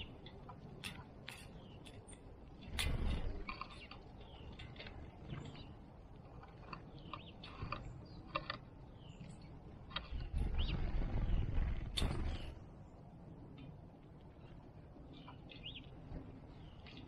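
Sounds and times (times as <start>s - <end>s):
small birds chirping: 0.0s - 17.0s
low rumble: 10.0s - 15.0s.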